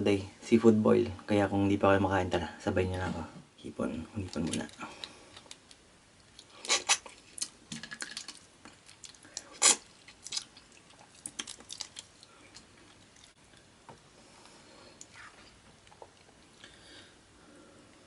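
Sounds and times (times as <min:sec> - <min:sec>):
prawn shells cracking: 0:04.3 - 0:12.4
chewing: 0:04.3 - 0:13.7, 0:14.9 - 0:16.8.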